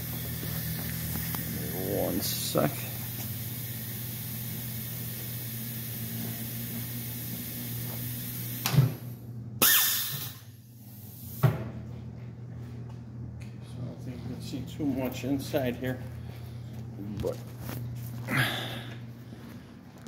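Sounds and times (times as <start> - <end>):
tire changer humming: 0.0 - 13.1
compressed air hiss: 0.6 - 8.9, 9.6 - 11.4.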